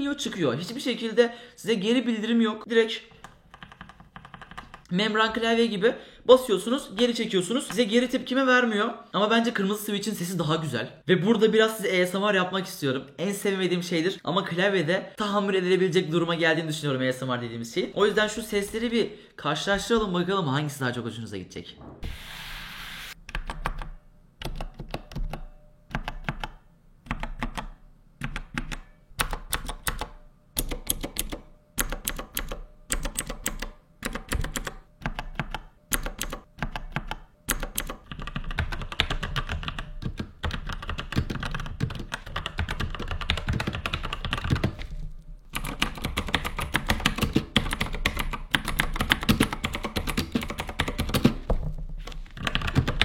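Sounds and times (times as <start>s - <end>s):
mechanical keyboard typing: 3.2s - 4.9s, 23.3s - 44.9s, 45.5s - 51.5s, 52.3s - 53.0s.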